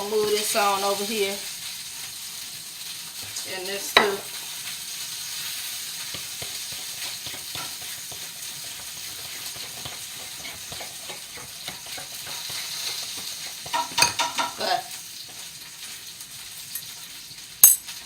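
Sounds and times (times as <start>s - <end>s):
food sizzling in a frying pan: 0.0s - 18.0s.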